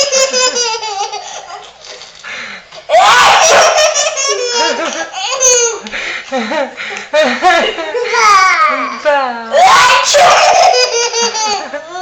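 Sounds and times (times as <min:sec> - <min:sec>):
baby laughing: 0:00.0 - 0:01.8, 0:03.3 - 0:05.9, 0:10.3 - 0:12.0.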